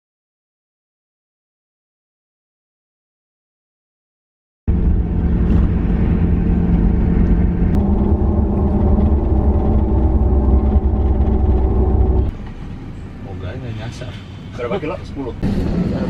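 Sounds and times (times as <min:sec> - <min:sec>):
road noise: 0:04.7 - 0:16.0
vehicle engine hum: 0:04.7 - 0:16.0.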